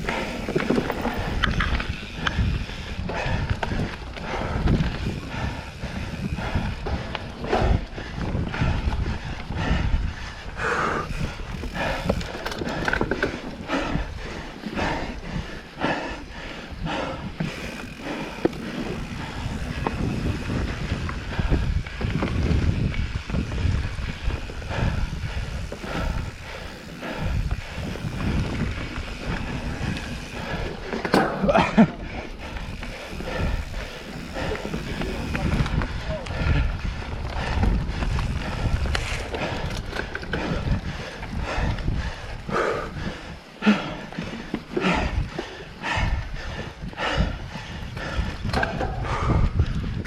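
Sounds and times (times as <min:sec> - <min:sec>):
bike rattling and knocking: 0:00.0 - 0:50.0
bike tyre noise on dirt: 0:00.0 - 0:50.0
rider heavy breathing: 0:00.0 - 0:50.0.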